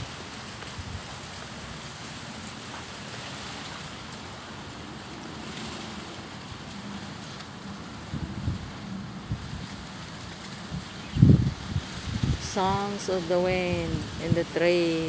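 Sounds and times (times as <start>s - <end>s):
wind buffeting microphone: 0.0s - 1.4s, 5.2s - 15.0s
wind blowing through trees: 0.0s - 15.0s.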